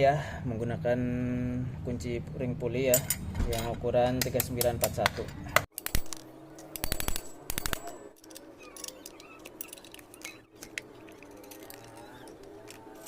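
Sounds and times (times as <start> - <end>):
spanner clinking on metal: 2.9 - 13.0.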